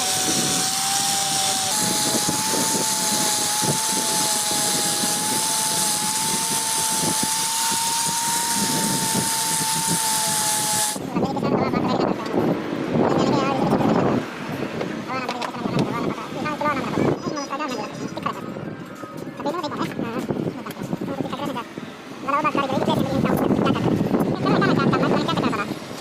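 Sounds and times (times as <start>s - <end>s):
compressed air hissing: 0.0s - 11.0s.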